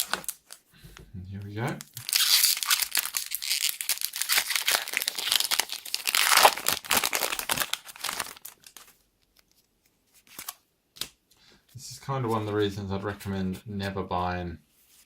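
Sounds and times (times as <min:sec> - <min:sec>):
foil wrapper tearing and crinkling: 0:00.0 - 0:00.6, 0:01.8 - 0:09.0.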